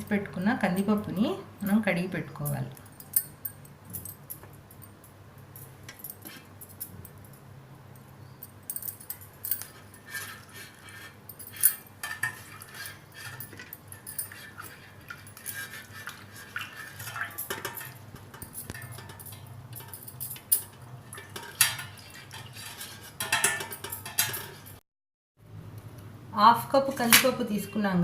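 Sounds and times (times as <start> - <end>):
metal dishes clinking and rattling: 8.5 - 24.8.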